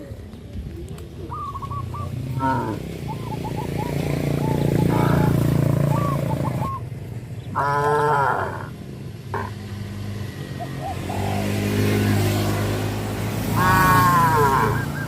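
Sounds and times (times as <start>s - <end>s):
cow mooing: 2.4s - 2.8s, 7.6s - 9.5s, 13.6s - 14.8s
small motorcycle engine running: 2.4s - 7.5s.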